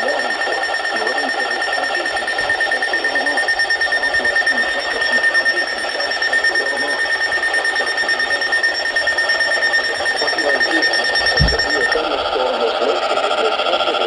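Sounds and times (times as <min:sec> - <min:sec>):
steady high-pitched tone: 0:00.0 - 0:12.9
crackly radio static: 0:00.0 - 0:14.0.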